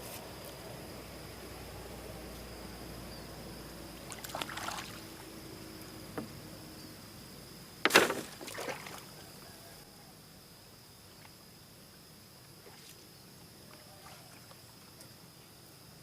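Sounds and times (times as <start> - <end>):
high insect drone: 0.0 - 16.0
water splashing and sloshing: 4.0 - 6.4, 7.8 - 9.4, 12.6 - 15.1.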